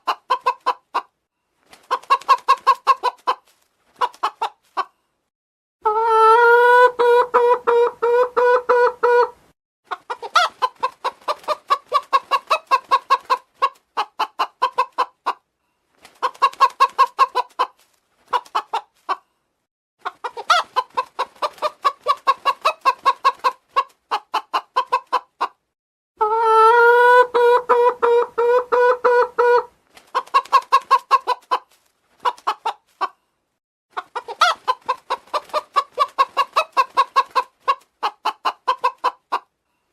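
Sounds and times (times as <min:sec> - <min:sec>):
chicken clucking: 0:00.0 - 0:01.2, 0:01.8 - 0:05.1, 0:05.8 - 0:15.5, 0:16.1 - 0:19.4, 0:20.0 - 0:33.3, 0:33.9 - 0:39.6.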